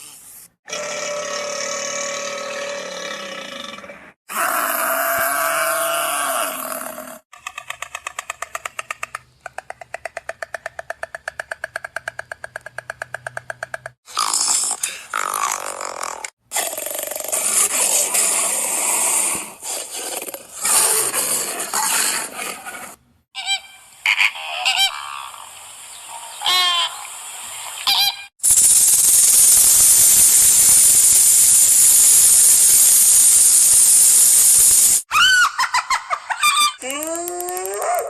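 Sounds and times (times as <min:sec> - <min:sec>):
harsh noisy animal calls: 0:00.7 - 0:07.2.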